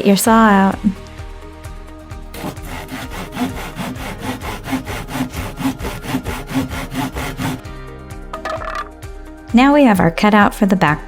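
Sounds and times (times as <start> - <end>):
hand saw cutting: 2.3 - 7.6.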